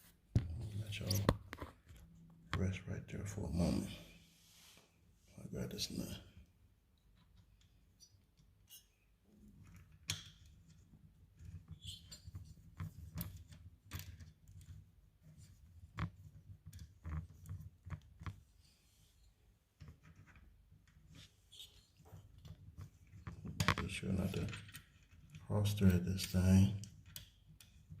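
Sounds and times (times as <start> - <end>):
faint handling noise: 0.0 - 2.8.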